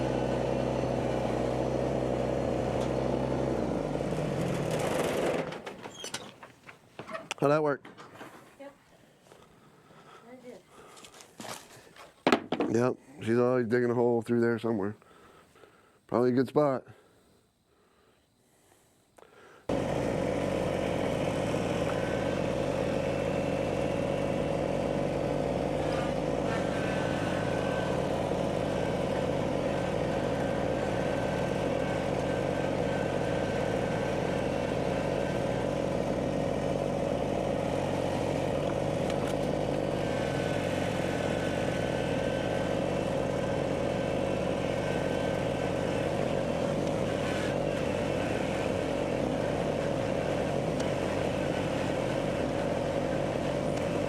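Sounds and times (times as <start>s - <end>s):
engine running steadily: 0.0s - 6.0s, 19.7s - 54.0s.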